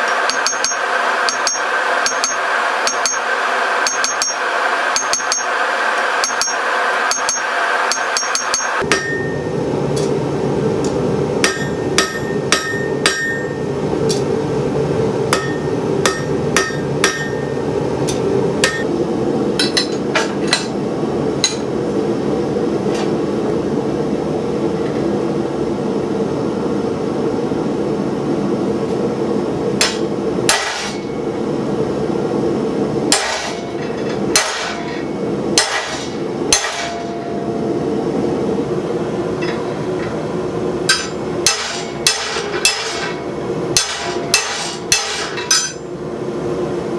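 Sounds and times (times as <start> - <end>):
hammer striking hot steel on anvil: 0.0 - 10.2, 10.8 - 14.4, 15.3 - 18.9, 19.6 - 20.8, 21.4 - 21.8, 29.8 - 31.3, 33.1 - 37.7, 39.4 - 45.9
gas forge rushing: 0.0 - 19.5.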